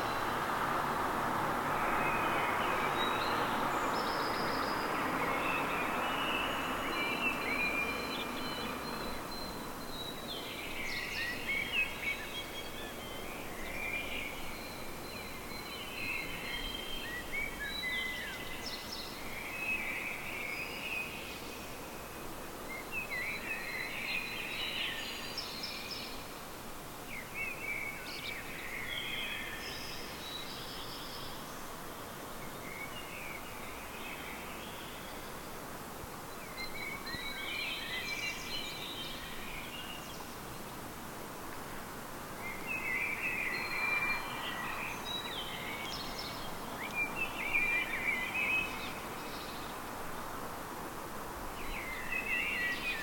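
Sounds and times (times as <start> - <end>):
passing vehicle: 0.0 - 9.3
songbird singing: 0.0 - 50.9, 51.5 - 53.0.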